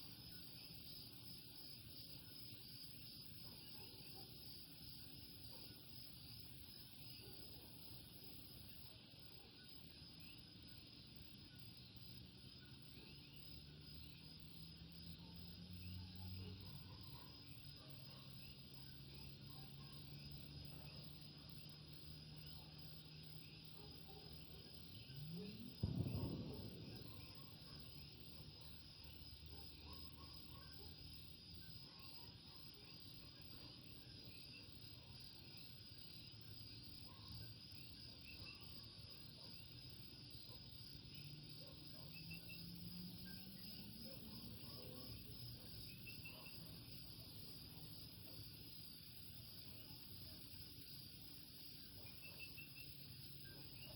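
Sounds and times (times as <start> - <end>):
high insect trill: 24.9 - 29.4.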